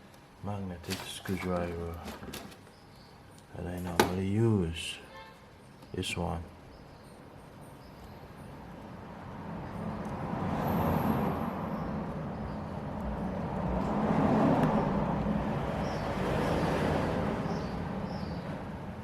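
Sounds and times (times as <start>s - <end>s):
road vehicle passing: 8.2s - 19.0s.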